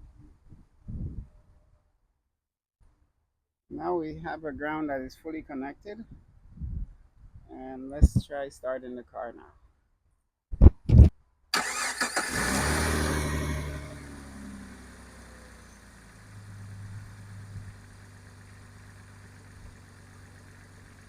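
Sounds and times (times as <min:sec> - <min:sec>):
car engine starting and idling: 0:11.6 - 0:21.0.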